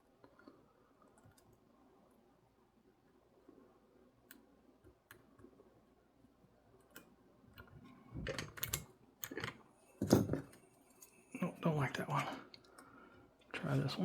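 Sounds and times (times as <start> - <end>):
rattling handling noise: 8.2 - 10.6.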